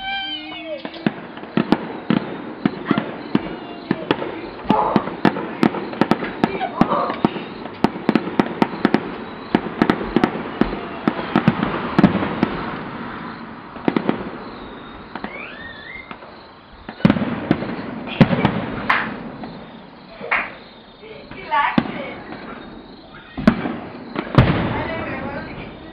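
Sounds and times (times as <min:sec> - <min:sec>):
firecrackers popping: 0:00.0 - 0:25.9
firework bangs: 0:00.0 - 0:25.9
firework whistle: 0:00.0 - 0:25.9.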